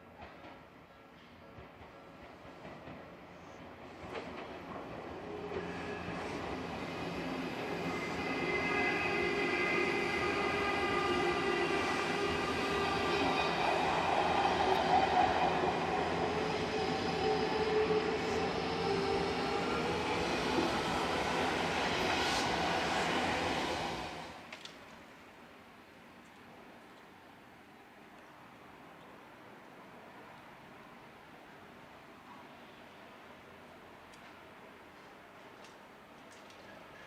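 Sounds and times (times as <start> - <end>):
electric train passing: 1.8 - 24.5.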